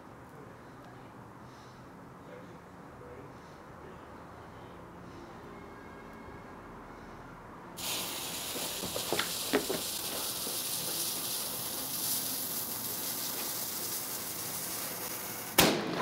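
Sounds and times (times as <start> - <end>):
firework fuse fizzing: 7.8 - 16.0
sharp crackles: 7.8 - 16.0.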